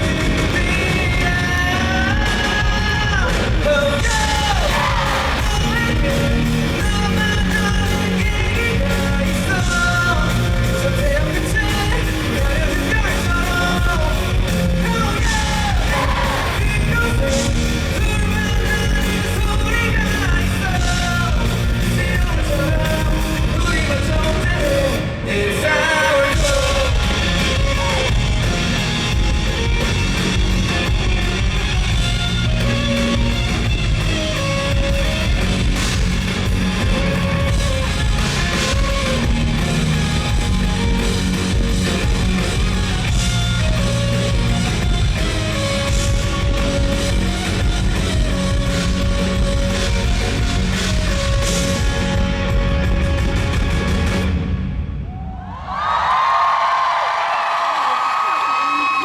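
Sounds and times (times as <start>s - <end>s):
person singing: 0.0s - 29.8s
electric guitar: 0.0s - 54.8s
live rock band playing: 0.0s - 54.8s.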